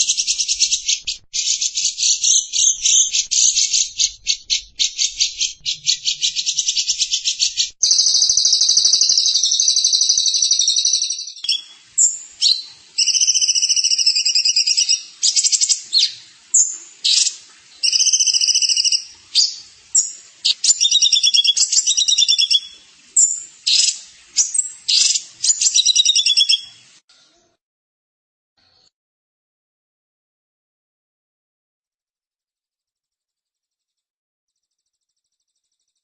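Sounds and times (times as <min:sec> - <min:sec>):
songbird singing buzzy trills: 0:00.0 - 0:26.8.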